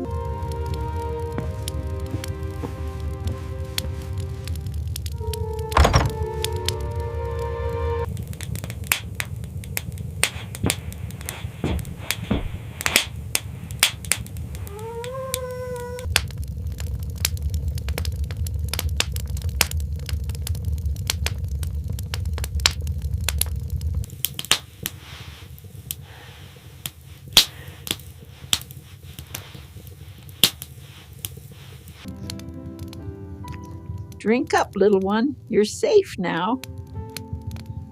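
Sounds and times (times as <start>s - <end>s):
low rumble: 0.0s - 26.0s
wood fire crackling and popping: 0.0s - 37.9s
fox cub whimper: 14.6s - 16.1s.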